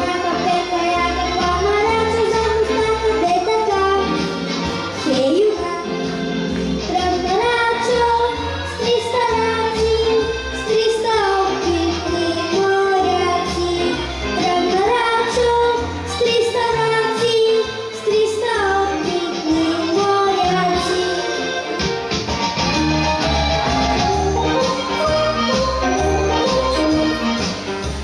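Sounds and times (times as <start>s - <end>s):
girl singing: 0.0s - 4.4s, 5.0s - 6.2s, 6.8s - 21.5s
backing track with steady beat: 0.0s - 28.0s.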